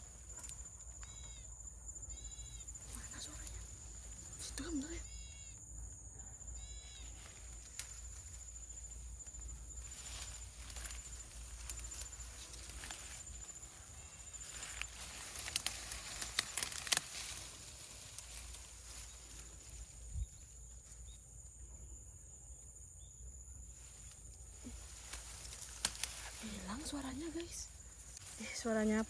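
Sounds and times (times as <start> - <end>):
high insect drone: 0.0 - 29.0
footsteps through undergrowth: 6.6 - 21.2, 23.7 - 29.0
twigs snapping and crackling: 7.2 - 8.5, 9.2 - 20.0, 24.2 - 29.0.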